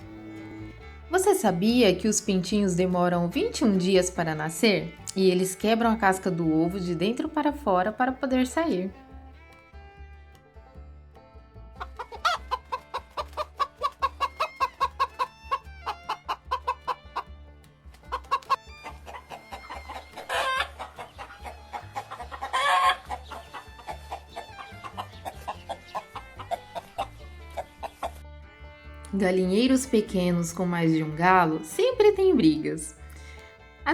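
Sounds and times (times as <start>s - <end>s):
chickens clucking: 0.0s - 1.6s, 11.8s - 17.3s, 18.0s - 28.2s.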